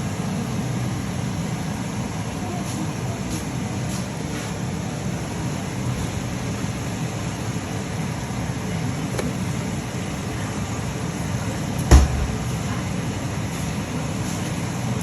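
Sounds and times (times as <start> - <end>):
steady low hum: 0.0 - 14.0
sharp knock: 11.9 - 12.5.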